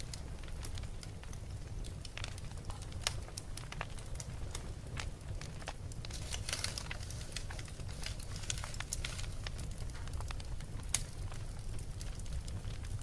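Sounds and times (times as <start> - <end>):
wood fire crackling: 0.0 - 13.0.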